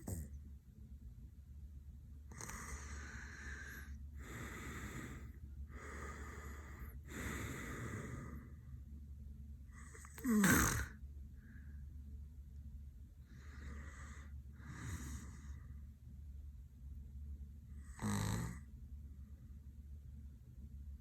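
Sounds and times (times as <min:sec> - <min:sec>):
loud snort: 0:00.0 - 0:00.3, 0:02.3 - 0:05.2, 0:10.2 - 0:11.0, 0:17.9 - 0:18.6
man snoring: 0:00.0 - 0:00.3, 0:02.3 - 0:08.5, 0:09.8 - 0:11.0, 0:13.4 - 0:15.6, 0:17.8 - 0:18.7.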